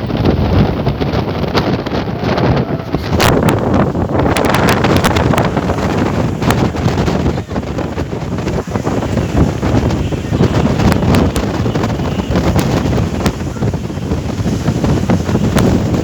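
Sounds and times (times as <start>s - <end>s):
big waves on a lake: 0.0s - 16.0s
wind buffeting microphone: 0.0s - 16.0s.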